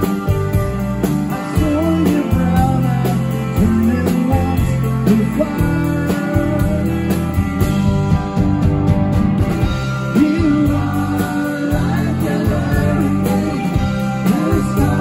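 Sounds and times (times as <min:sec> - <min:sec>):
bass guitar: 0:00.0 - 0:15.0
electric guitar lead: 0:00.0 - 0:15.0
drum beat: 0:06.3 - 0:15.0.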